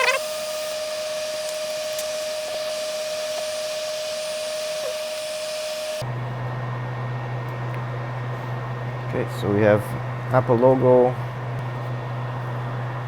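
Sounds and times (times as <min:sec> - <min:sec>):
hot air rework station blowing: 0:00.0 - 0:06.1.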